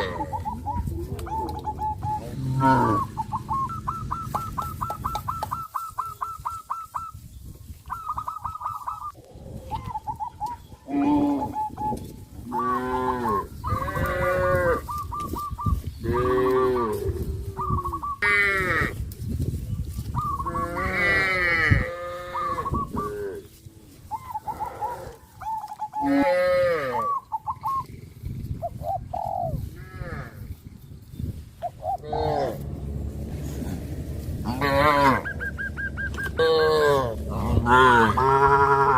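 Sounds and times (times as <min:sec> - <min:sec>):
cattle mooing: 0:02.2 - 0:03.1, 0:32.0 - 0:35.4, 0:36.2 - 0:38.9.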